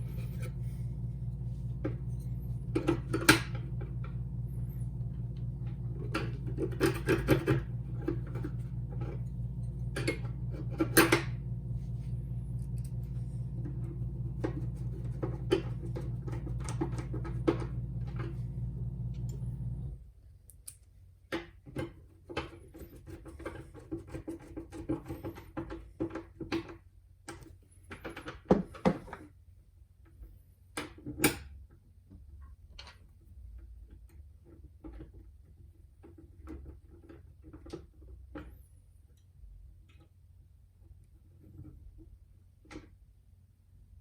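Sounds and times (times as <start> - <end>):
steady hum: 0.0 - 20.0.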